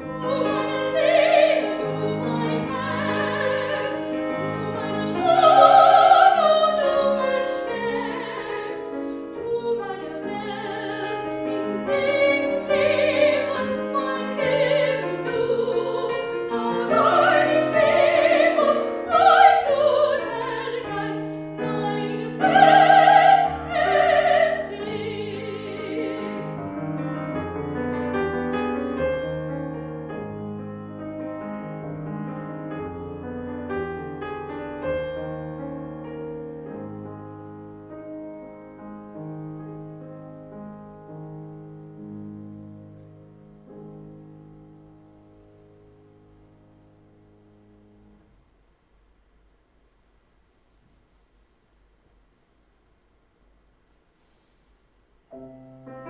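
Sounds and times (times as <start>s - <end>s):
operatic soprano singing: 0.0s - 26.7s
piano accompaniment: 0.0s - 48.4s, 55.3s - 56.0s.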